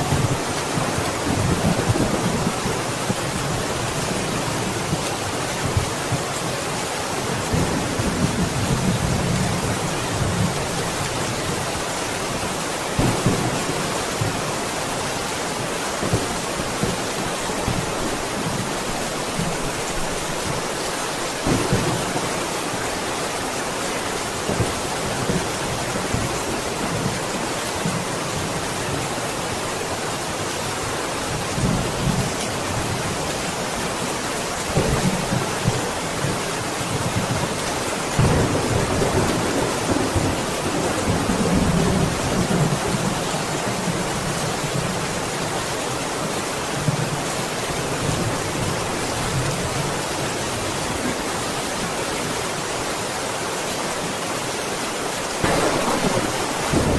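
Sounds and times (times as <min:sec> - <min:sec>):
heavy rain: 0:00.0 - 0:56.9
thunder rumbling: 0:37.0 - 0:43.1, 0:55.4 - 0:56.9.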